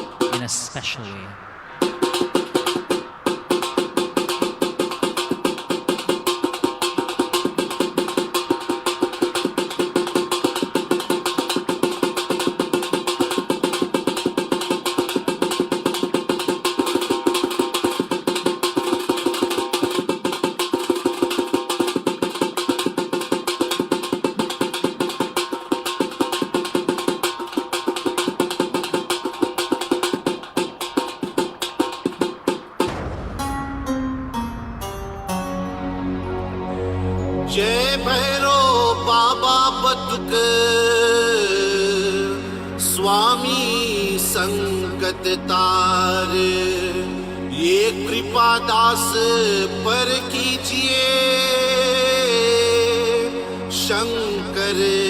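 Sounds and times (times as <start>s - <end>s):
fast hand percussion: 3.4s - 33.3s
held drone note: 32.9s - 39.0s.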